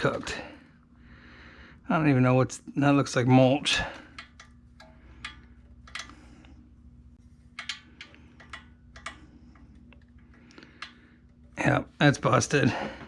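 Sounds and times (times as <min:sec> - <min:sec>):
faint steady hum: 0:00.0 - 0:13.0
hand tools clicking on engine valves: 0:04.1 - 0:06.3, 0:07.5 - 0:11.6.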